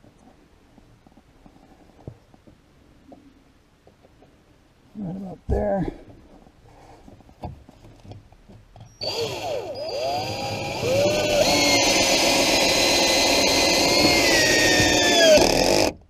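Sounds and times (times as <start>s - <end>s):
power drill motor whining: 9.0s - 16.0s.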